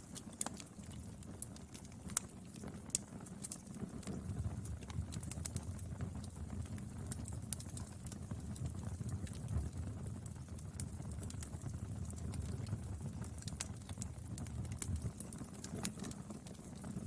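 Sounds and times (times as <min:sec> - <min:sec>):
fire crackling and popping: 0:00.0 - 0:17.0.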